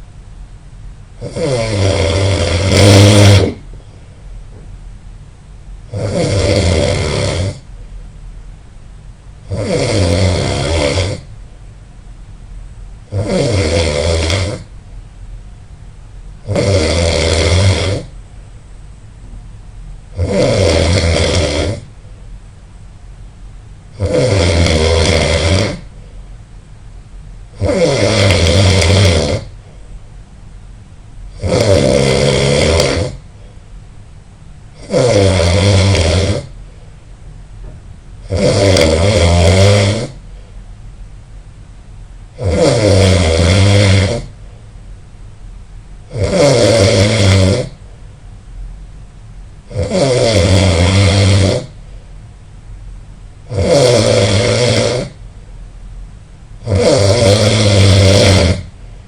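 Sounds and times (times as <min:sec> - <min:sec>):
person snoring loudly: 0:01.2 - 0:03.7, 0:05.9 - 0:07.7, 0:09.5 - 0:11.3, 0:13.1 - 0:14.7, 0:16.4 - 0:18.2, 0:20.1 - 0:21.9, 0:23.9 - 0:26.0, 0:27.5 - 0:29.6, 0:31.3 - 0:33.2, 0:34.8 - 0:36.6, 0:38.2 - 0:40.2, 0:42.4 - 0:44.4, 0:46.1 - 0:47.8, 0:49.7 - 0:51.8, 0:53.5 - 0:55.2, 0:56.6 - 0:58.8.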